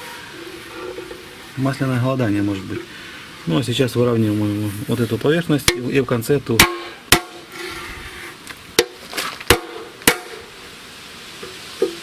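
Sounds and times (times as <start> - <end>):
light scraping: 0.0 - 5.6, 7.3 - 9.5
sharp metallic knocks: 6.6 - 7.5, 8.8 - 10.5.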